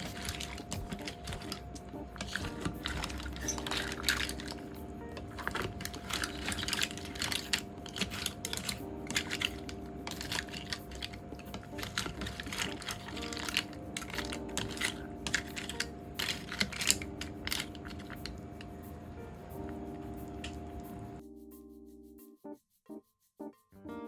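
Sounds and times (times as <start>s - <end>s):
mussel shells clattering: 0.0s - 4.6s, 5.2s - 18.4s
soft background music: 0.0s - 24.0s.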